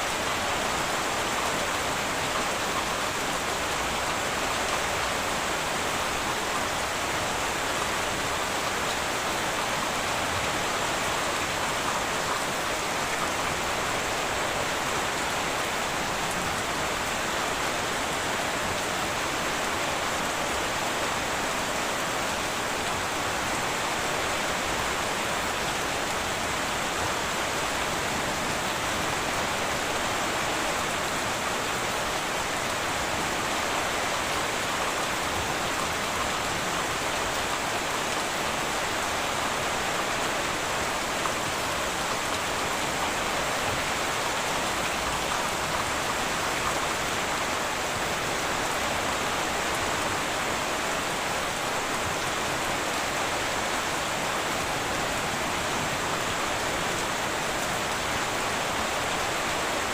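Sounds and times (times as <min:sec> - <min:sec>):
heavy rain on a tin roof: 0:00.0 - 0:59.9.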